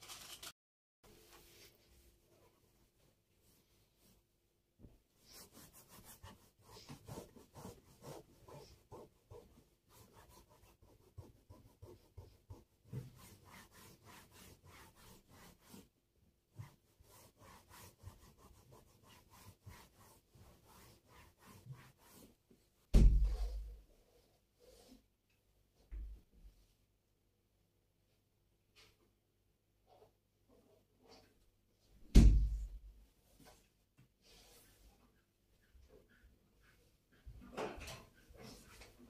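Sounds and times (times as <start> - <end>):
hand scrubbing a surface: 1.4 - 4.4, 5.1 - 22.4, 34.2 - 37.5, 38.1 - 39.0.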